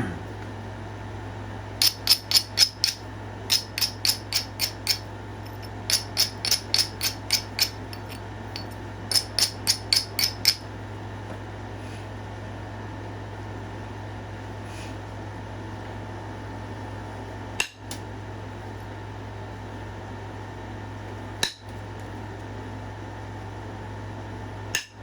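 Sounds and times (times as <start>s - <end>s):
hammer tapping punch on stone: 1.8s - 10.7s.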